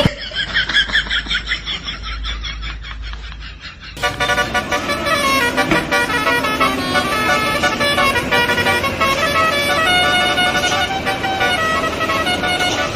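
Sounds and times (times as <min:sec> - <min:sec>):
multi-tone bus horn playing a tune: 0:04.0 - 0:12.9.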